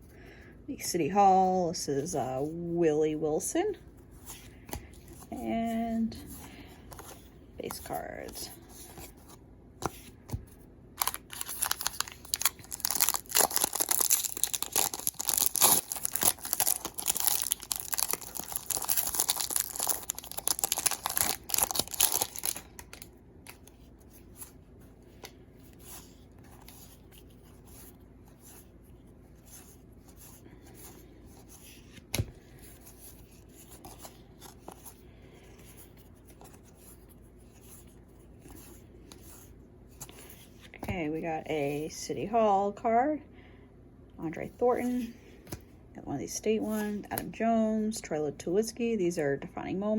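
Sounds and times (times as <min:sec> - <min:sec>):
wrapper tearing and crinkling: 0:11.0 - 0:23.7.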